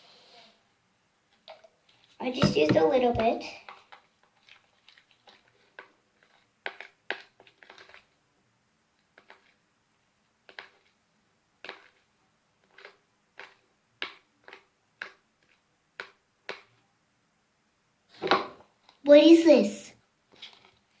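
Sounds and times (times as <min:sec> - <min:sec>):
spoon stirring sticky mixture: 0:01.3 - 0:08.3, 0:08.9 - 0:17.0, 0:20.1 - 0:21.0.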